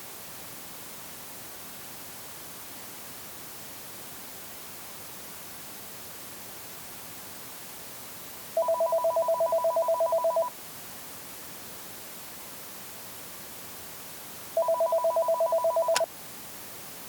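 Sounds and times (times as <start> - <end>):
telephone ringer warbling: 14.6 - 16.1.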